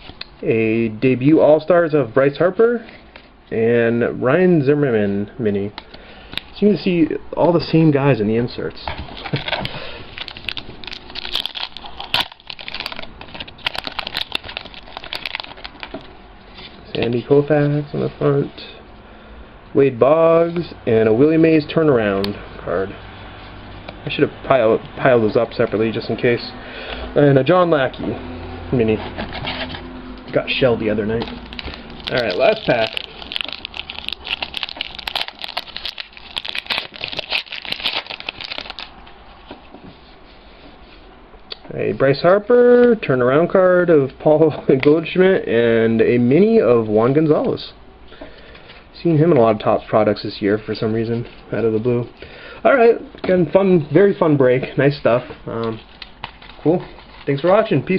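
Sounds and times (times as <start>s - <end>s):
cards being handled: 8.9s - 17.3s, 31.0s - 40.0s, 55.2s - 57.9s
wrapper crinkling: 9.1s - 16.1s, 31.0s - 39.2s, 55.5s - 57.9s.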